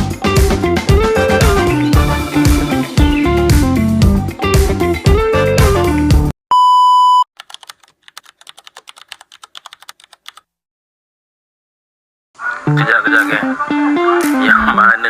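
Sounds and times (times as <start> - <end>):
guitar music: 0.1 - 6.2, 12.6 - 15.0
short electronic beep: 6.5 - 7.2
keyboard typing clicks: 7.4 - 10.4.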